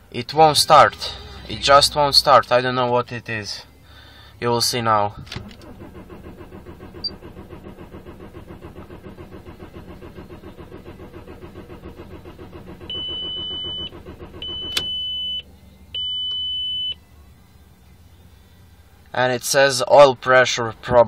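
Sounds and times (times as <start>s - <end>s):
starter motor cranking: 0.8s - 2.4s, 5.1s - 15.4s
dashboard warning beeps: 5.4s - 17.1s.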